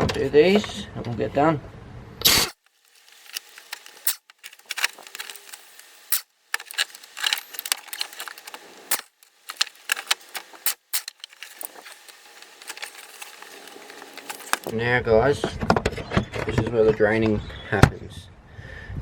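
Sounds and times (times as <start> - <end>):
metallic clinks of tools: 2.4 - 14.7.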